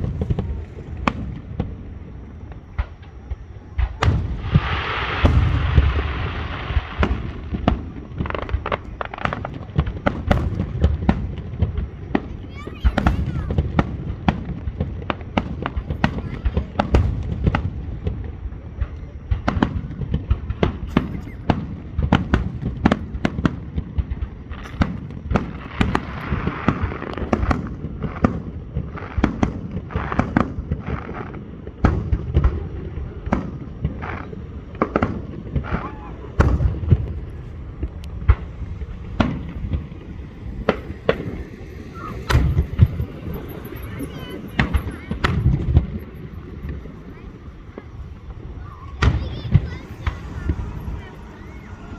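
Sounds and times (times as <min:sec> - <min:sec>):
fireworks bangs: 0:00.0 - 0:51.9
low rumble: 0:34.3 - 0:51.9.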